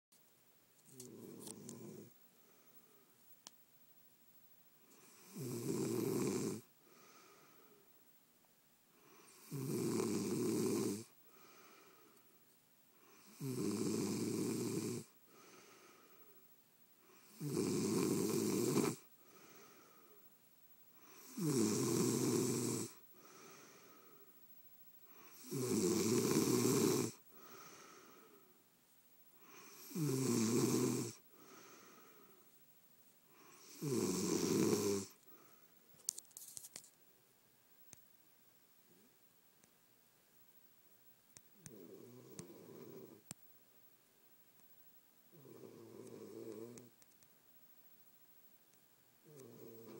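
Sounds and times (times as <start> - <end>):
soft breaths: 0.8 - 3.6, 4.7 - 8.2, 8.9 - 37.0, 41.0 - 43.6, 49.2 - 49.9
loud snoring: 1.0 - 2.1, 5.0 - 6.7, 9.1 - 11.2, 13.1 - 15.2, 17.2 - 19.1, 21.0 - 23.0, 25.2 - 27.2, 29.4 - 31.7, 33.4 - 35.2, 41.7 - 43.2, 45.3 - 46.9, 49.3 - 49.9.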